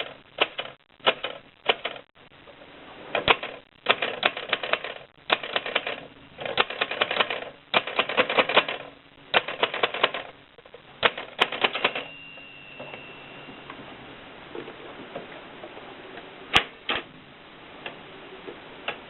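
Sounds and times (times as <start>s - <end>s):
typewriter clacking: 0.0s - 2.0s, 3.2s - 10.3s, 11.0s - 12.1s
faint steady high tone: 11.6s - 14.8s.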